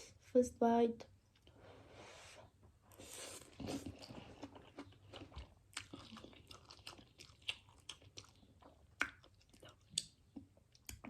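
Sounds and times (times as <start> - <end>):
person chewing noodles: 2.9 - 11.0.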